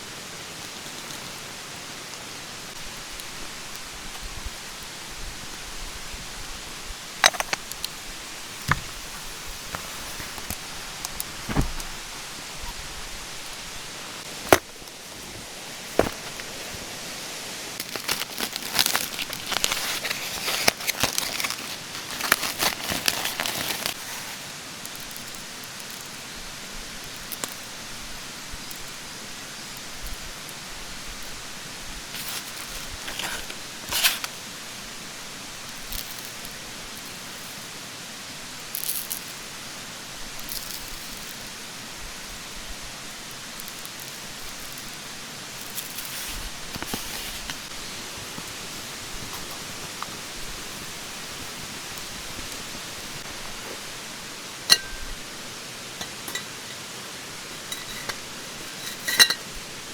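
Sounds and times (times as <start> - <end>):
mountain stream rushing: 7.0 - 19.4, 44.9 - 59.9
close rustling and crackling: 7.1 - 25.4, 32.1 - 34.4, 43.6 - 59.9.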